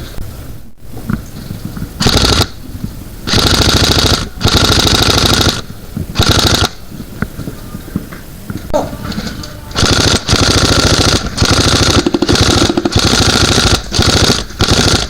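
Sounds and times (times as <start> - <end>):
airsoft gun firing rapid clicks: 2.0 - 2.6, 3.3 - 6.9, 9.8 - 15.0.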